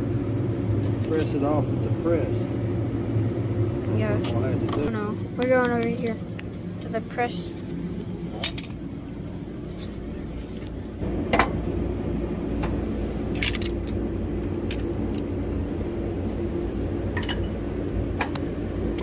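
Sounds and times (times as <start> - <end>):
machine humming: 0.0 - 19.0
metallic clinks and knocks: 13.3 - 15.2.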